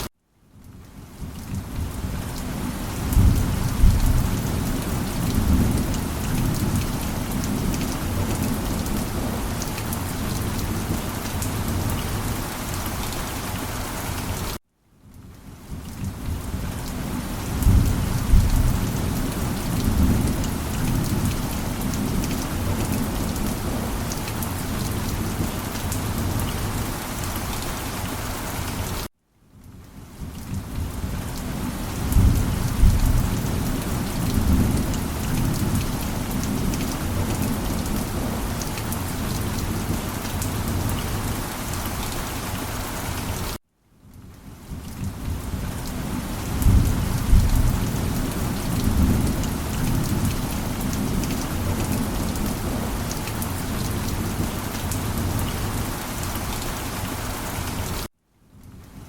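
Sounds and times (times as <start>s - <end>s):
heavy rain: 0.0s - 59.0s
deep thunder rumbling: 3.0s - 9.4s, 17.4s - 24.1s, 32.0s - 38.7s.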